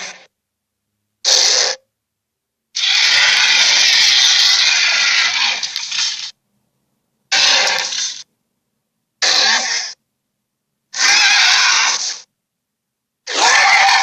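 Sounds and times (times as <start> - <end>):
giant ape roaring: 2.8 - 6.2, 7.3 - 8.2, 9.2 - 10.0, 11.0 - 12.3, 13.3 - 14.0.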